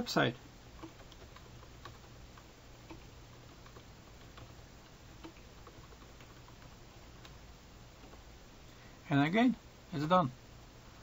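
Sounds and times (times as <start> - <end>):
low steady hum: 0.0 - 11.0
computer keyboard typing: 0.7 - 8.3.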